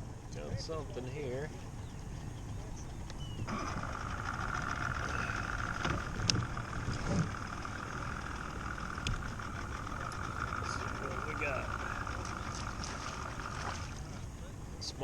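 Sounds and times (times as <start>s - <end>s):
electric motor whining: 1.8s - 14.3s
sharp clicks: 8.8s - 13.0s.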